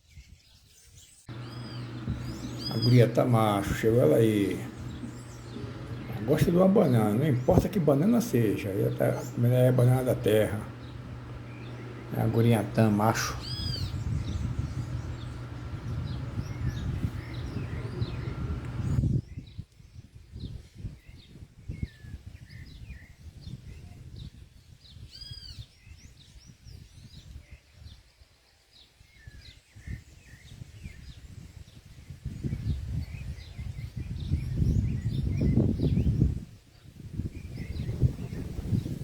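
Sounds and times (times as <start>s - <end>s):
small birds chirping: 0.1s - 23.5s, 32.3s - 39.0s
loud arched bird call: 1.3s - 7.6s
low rumbling noise: 1.3s - 19.0s.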